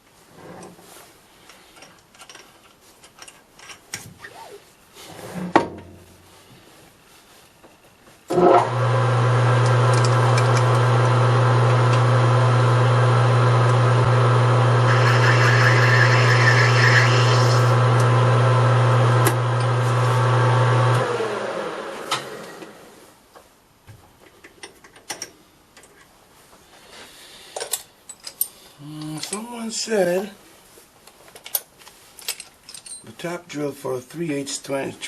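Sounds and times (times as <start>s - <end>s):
metal lathe motor hum: 8.4s - 21.4s
lathe tool scraping brass: 14.4s - 17.8s.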